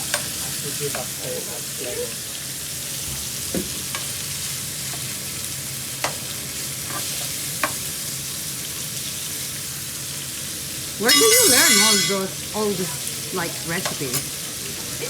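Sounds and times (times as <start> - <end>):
food sizzling in a pan: 0.0 - 15.0
utensil clinking against pan: 11.0 - 12.3.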